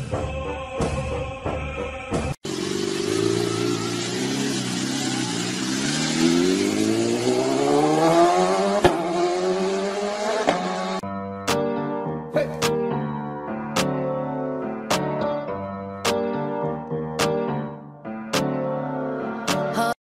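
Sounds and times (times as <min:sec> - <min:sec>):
vehicle engine accelerating: 0:02.4 - 0:11.0.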